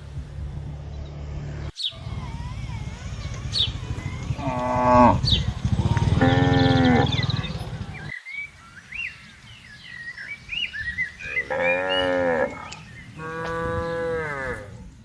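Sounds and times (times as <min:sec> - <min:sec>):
small birds chirping: 0:00.8 - 0:15.0
cow mooing: 0:04.4 - 0:07.3, 0:11.4 - 0:14.8.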